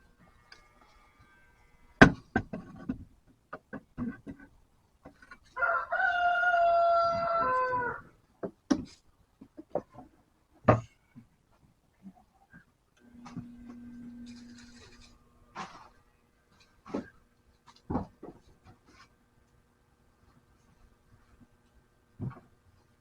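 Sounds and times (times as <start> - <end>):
rooster crowing: 5.6 - 8.0.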